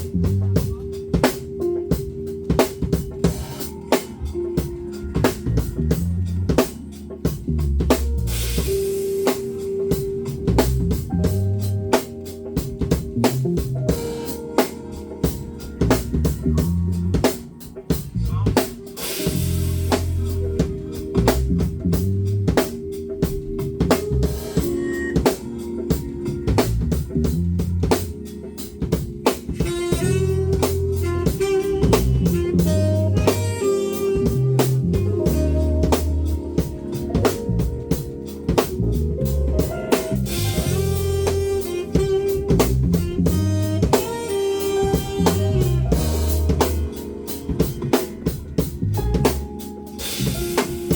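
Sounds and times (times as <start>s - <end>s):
pulsing bass line: 0.0s - 8.8s, 10.0s - 11.9s, 15.4s - 17.3s, 19.3s - 25.3s, 25.9s - 28.2s, 29.5s - 47.2s, 48.3s - 49.6s
band playing instrumental groove: 0.0s - 50.9s
drum strokes: 0.0s - 50.9s.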